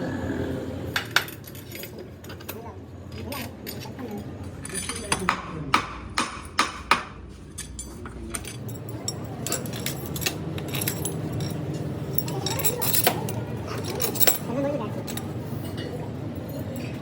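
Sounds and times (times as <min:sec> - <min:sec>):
metal parts clinking: 0:01.0 - 0:05.3, 0:07.4 - 0:15.3.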